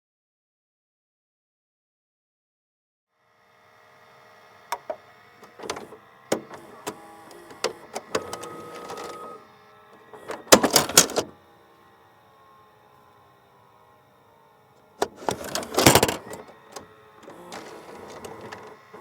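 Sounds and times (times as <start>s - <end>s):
tape deck humming: 4.7s - 11.9s, 14.8s - 19.0s
motor whirring: 4.7s - 19.0s
plastic and metal clicks: 4.8s - 9.2s, 10.2s - 11.3s, 15.0s - 19.0s
tape ejecting with rattling clatter: 4.8s - 9.4s, 10.1s - 11.4s, 15.0s - 19.0s.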